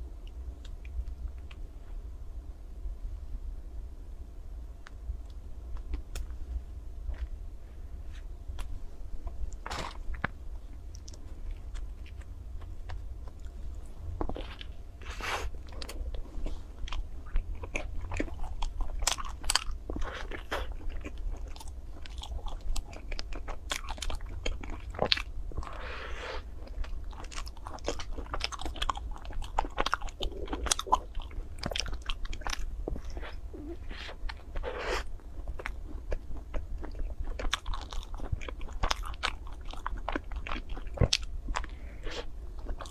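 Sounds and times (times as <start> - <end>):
steady low hum: 0.0 - 42.9
wet chewing: 14.2 - 42.9.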